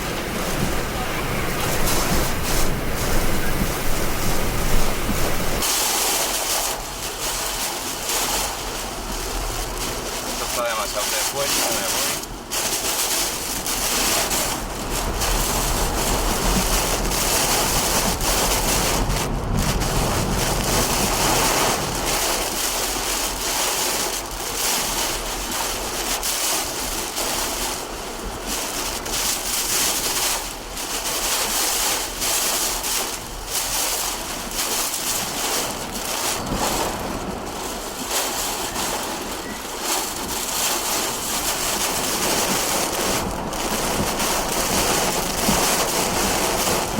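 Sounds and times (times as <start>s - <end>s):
wind buffeting microphone: 0.0s - 5.7s, 11.8s - 22.6s, 35.6s - 46.9s
wind and heavy rain: 0.0s - 46.9s.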